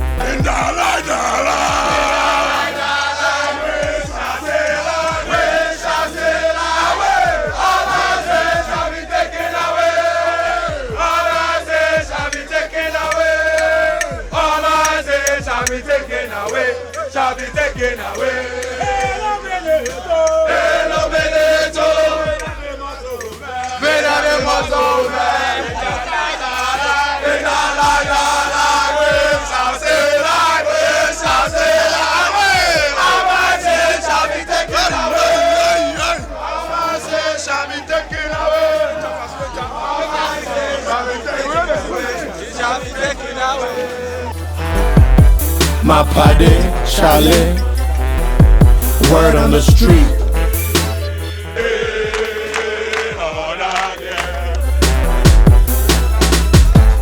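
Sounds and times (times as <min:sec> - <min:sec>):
crowd singing a chant: 0:00.0 - 0:57.0
low repeated beat: 0:00.0 - 0:57.0.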